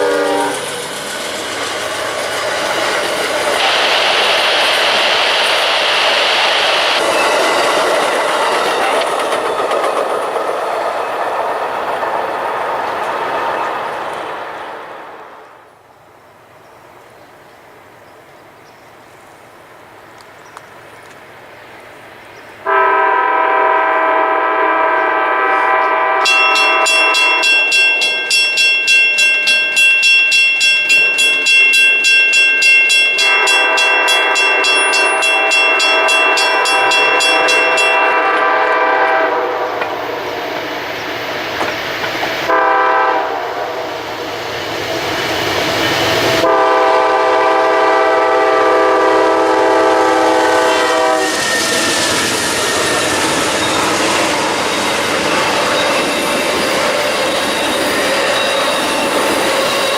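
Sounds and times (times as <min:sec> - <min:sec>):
locomotive air horn: 0:00.0 - 0:00.7, 0:22.6 - 0:27.6, 0:33.2 - 0:40.2, 0:42.5 - 0:44.0, 0:46.4 - 0:52.0
passing train rumble: 0:00.0 - 0:59.9
bell ringing rapidly: 0:26.3 - 0:38.2.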